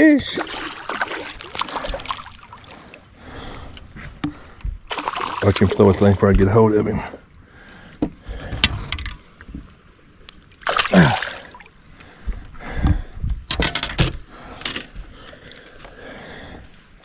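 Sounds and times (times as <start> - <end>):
fish splashing: 0.4 - 3.0, 4.8 - 5.9, 10.6 - 11.7
knocks and rattles: 12.9 - 15.1.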